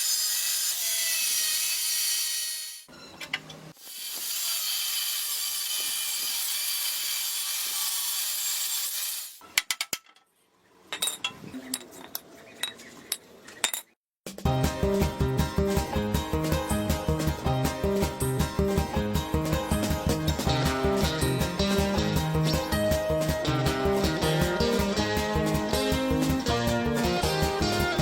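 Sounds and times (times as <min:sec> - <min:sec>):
background music: 0:14.3 - 0:28.0.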